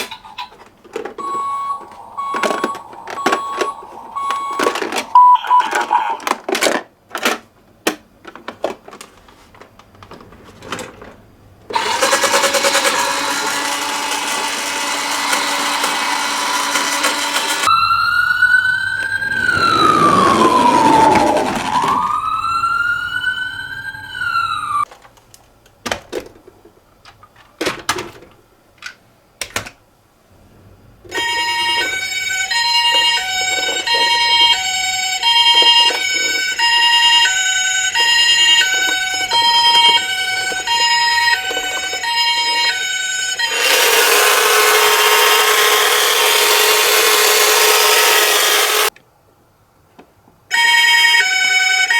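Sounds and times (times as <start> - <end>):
clicks: 1.0 - 5.2
two-tone ambulance siren: 1.2 - 6.1, 11.8 - 24.9, 31.2 - 48.9, 50.5 - 51.9
wailing siren: 1.2 - 6.2, 11.8 - 24.9, 31.2 - 48.9
toy whirring rattle: 11.8 - 17.7, 38.7 - 48.9.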